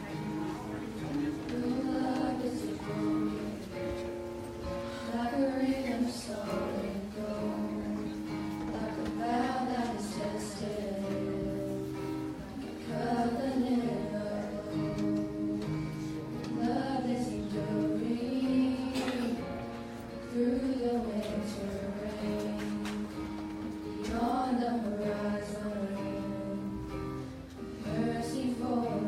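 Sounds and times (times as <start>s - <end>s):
acoustic guitar playing: 0.0s - 29.0s
person singing: 1.0s - 4.0s, 4.7s - 29.0s.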